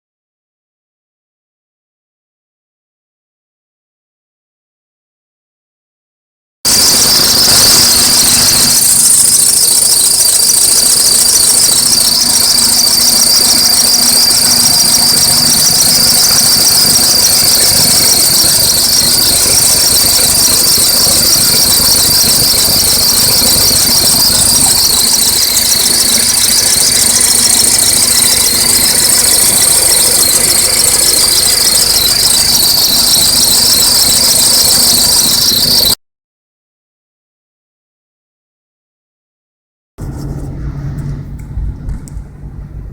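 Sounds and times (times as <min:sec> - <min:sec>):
chirping squeak from engine: 0:06.7 - 0:36.0
low engine hum: 0:40.0 - 0:42.9.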